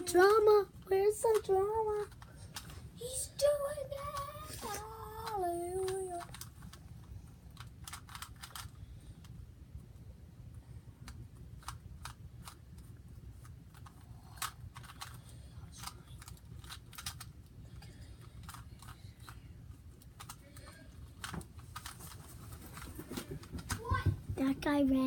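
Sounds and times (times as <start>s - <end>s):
puzzle cube plastic clicks: 0.0s - 2.8s, 3.4s - 9.4s, 11.0s - 22.2s.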